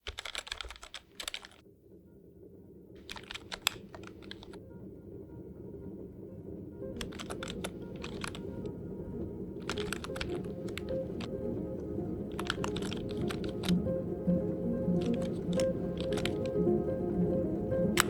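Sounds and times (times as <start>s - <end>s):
computer keyboard typing: 0.0s - 1.6s, 3.0s - 4.6s, 7.0s - 8.7s, 9.6s - 18.0s
low background music: 2.0s - 18.0s.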